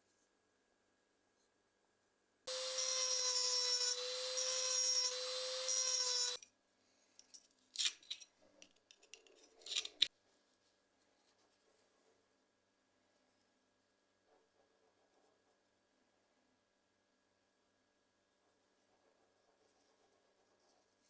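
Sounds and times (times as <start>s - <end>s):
small power tool running: 2.5s - 6.4s
scrapes and clicks: 7.2s - 10.1s.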